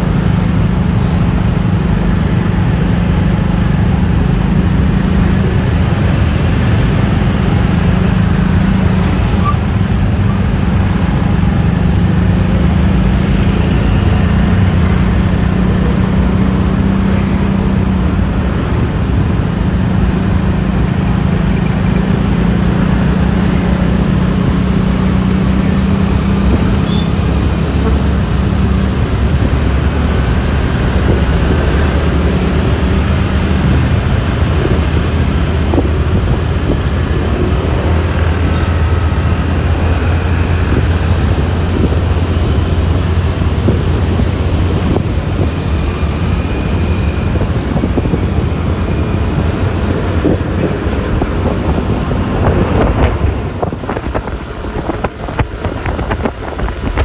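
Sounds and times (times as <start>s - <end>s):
road and wind noise: 0.0s - 57.0s
scooter engine running: 0.0s - 57.0s.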